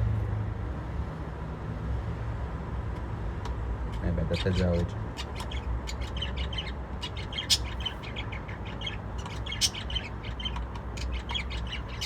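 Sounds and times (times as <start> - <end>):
small birds chirping: 4.0 - 12.0.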